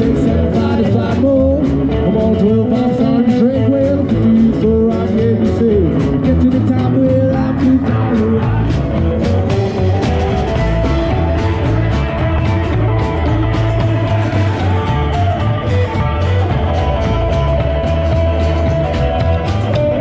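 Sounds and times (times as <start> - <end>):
bass line: 0.0 - 20.0
drum beats: 0.0 - 20.0
lead guitar: 0.0 - 20.0.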